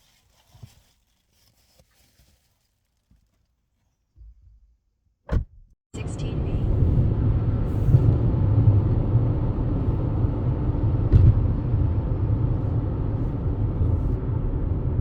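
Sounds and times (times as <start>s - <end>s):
car road rumble from inside: 6.0s - 15.0s
car bump: 11.0s - 11.6s.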